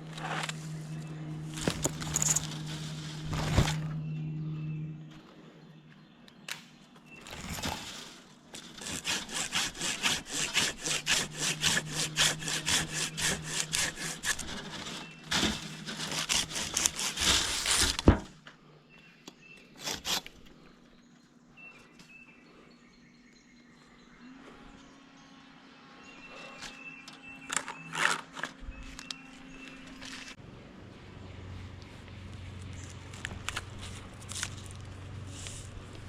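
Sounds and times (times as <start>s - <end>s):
hand saw cutting tree limb: 1.5s - 3.9s, 7.2s - 18.3s, 19.8s - 20.4s
branch cracking: 1.5s - 4.0s.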